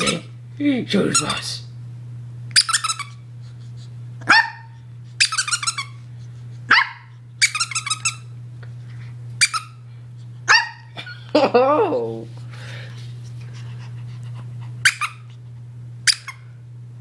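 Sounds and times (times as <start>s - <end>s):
squeaky toy squeaking: 2.6s - 3.2s, 5.2s - 6.0s, 7.4s - 8.2s, 14.8s - 15.2s, 16.1s - 16.4s
puppy barking: 4.2s - 5.7s, 6.7s - 8.2s, 10.4s - 10.9s, 16.1s - 16.4s.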